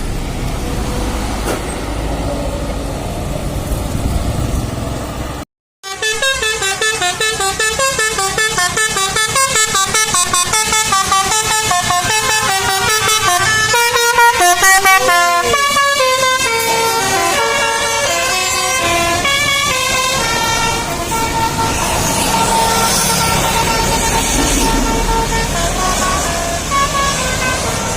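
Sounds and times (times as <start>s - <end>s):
bus air horn melody: 5.8s - 27.9s.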